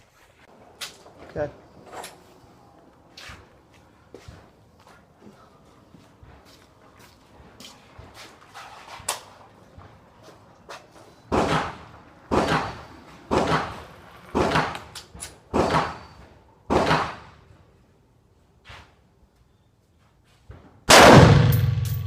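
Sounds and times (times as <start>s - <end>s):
echoing gunshots: 11.3s - 14.9s, 15.5s - 16.1s, 16.7s - 17.4s, 20.9s - 22.0s.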